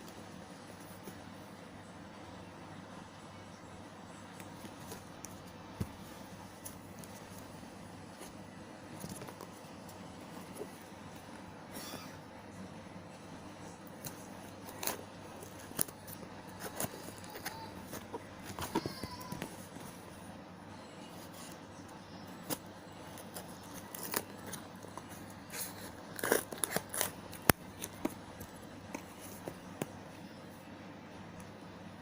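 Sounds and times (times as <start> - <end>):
packaging rustling: 22.4 - 29.9
packaging being snipped: 23.2 - 29.6.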